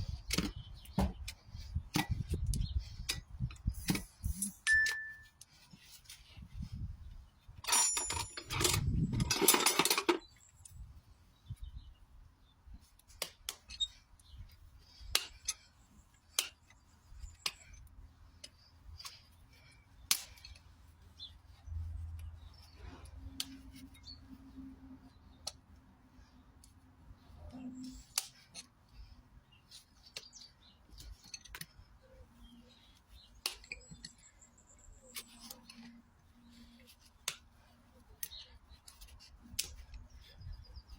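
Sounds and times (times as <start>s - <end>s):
hoof tool clicks and snips: 0.0s - 5.6s, 13.0s - 24.2s, 25.2s - 26.8s, 27.8s - 29.1s, 29.7s - 40.9s.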